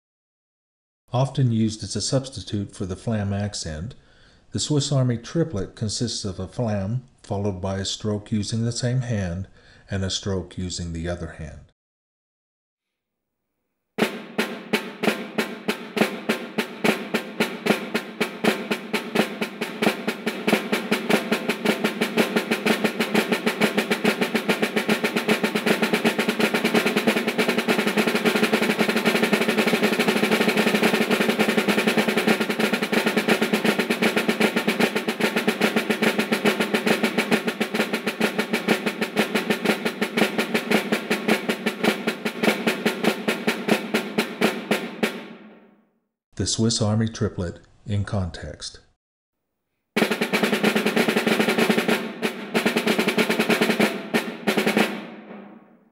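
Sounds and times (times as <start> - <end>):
snare drum played with sticks: 14.0 - 45.5, 50.0 - 55.6.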